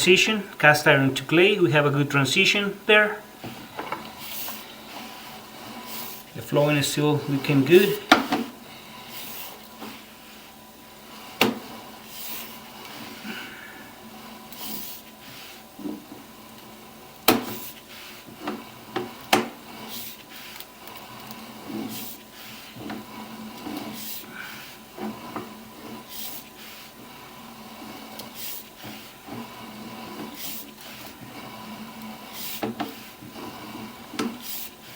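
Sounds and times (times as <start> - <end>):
cable rubbing and scraping in pipe: 3.4 - 13.2, 17.6 - 34.9.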